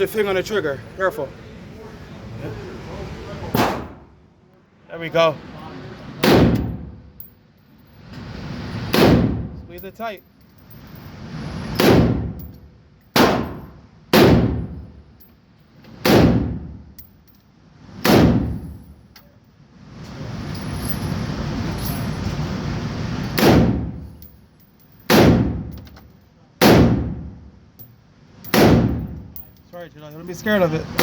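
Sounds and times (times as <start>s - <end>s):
pistol shots ringing: 3.6s - 4.0s, 13.2s - 14.7s, 23.4s - 23.9s, 28.5s - 29.2s.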